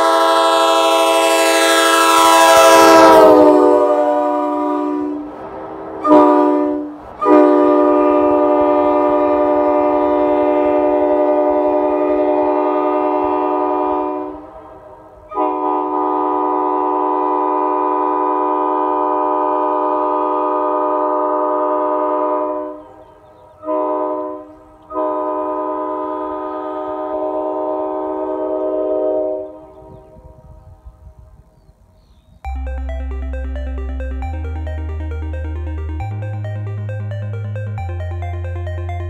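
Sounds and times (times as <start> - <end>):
locomotive air horn blasts: 0.0 - 5.3, 6.0 - 14.6, 15.3 - 22.9, 23.6 - 29.9.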